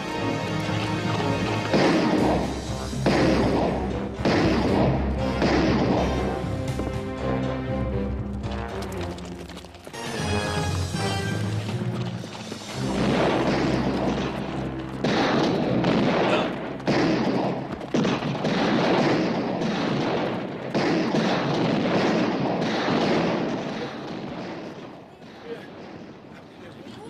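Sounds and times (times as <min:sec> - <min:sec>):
heavy gunfire: 0:00.6 - 0:06.9, 0:12.4 - 0:26.3.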